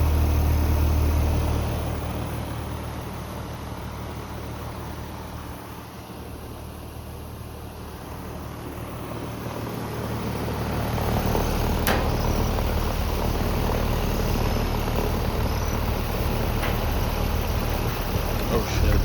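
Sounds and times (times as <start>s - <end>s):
air conditioner humming: 4.0s - 19.0s
sharp click: 11.8s - 12.6s.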